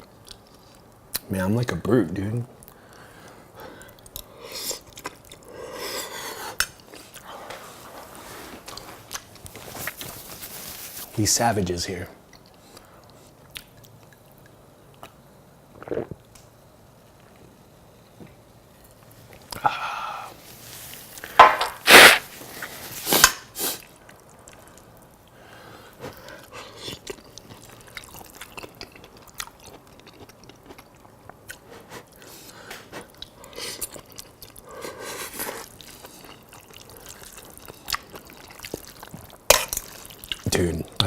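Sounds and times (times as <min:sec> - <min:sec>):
breathy bursts: 0:19.6 - 0:20.4
wet chewing: 0:33.0 - 0:40.4.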